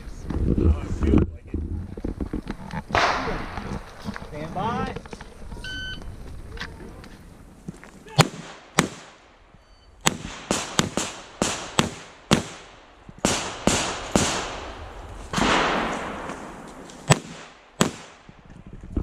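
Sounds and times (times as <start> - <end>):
revolver gunshots: 2.9 - 3.6, 8.2 - 9.4, 10.0 - 18.3.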